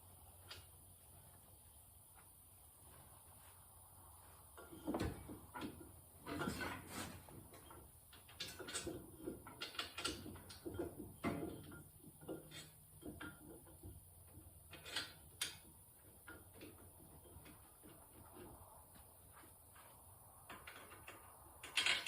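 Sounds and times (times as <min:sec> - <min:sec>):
tools and metal parts clicking: 0:07.5 - 0:14.0, 0:14.6 - 0:17.6, 0:20.5 - 0:22.0.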